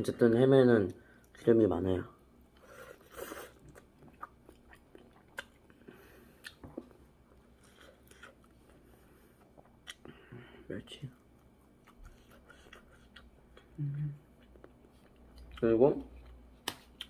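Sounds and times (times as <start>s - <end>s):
person chewing food: 2.5s - 10.4s, 11.1s - 17.0s.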